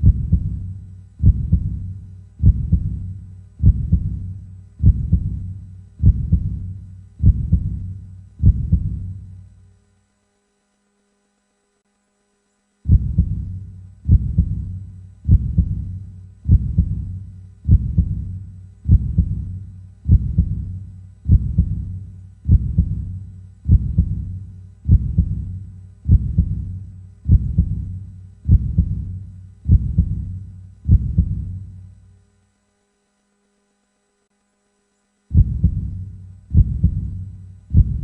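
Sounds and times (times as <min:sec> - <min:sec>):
heartbeat thuds: 0:00.0 - 0:09.3, 0:12.9 - 0:31.8, 0:35.3 - 0:38.0.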